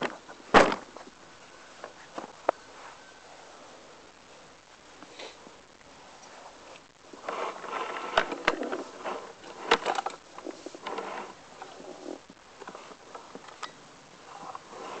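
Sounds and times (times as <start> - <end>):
scraping and rustling: 6.2 - 15.0.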